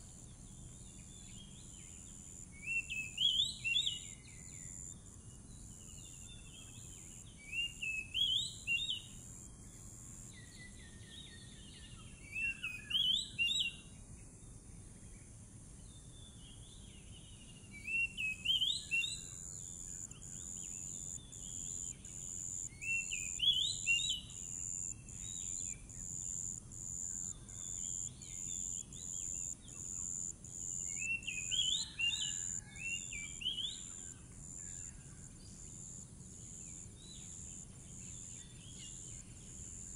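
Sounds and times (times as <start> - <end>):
bird singing whistled phrases: 12.3 - 13.8, 17.8 - 19.2, 22.8 - 24.3, 30.9 - 33.9.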